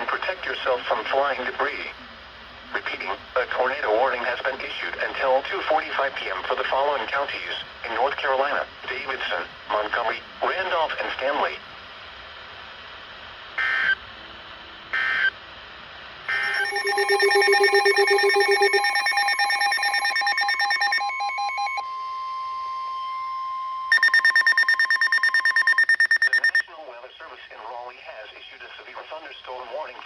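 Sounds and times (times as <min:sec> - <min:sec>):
data burst squawks: 0:16.3 - 0:21.8, 0:23.9 - 0:26.6
fast loud pulsing beep: 0:16.3 - 0:26.6
pulsing electronic alarm beeps: 0:16.3 - 0:26.6
steady alarm tone: 0:16.3 - 0:26.6.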